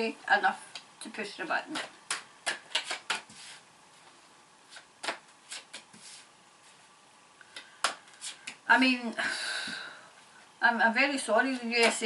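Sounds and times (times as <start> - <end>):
cards clicking and tapping on table: 1.7 - 3.5, 4.7 - 6.0.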